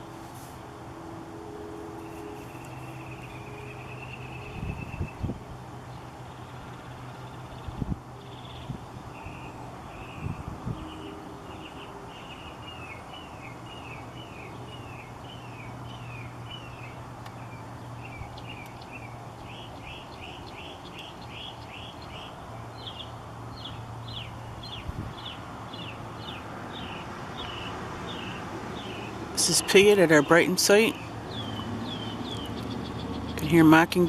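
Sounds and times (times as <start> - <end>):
mockingbird singing: 7.0 - 34.0.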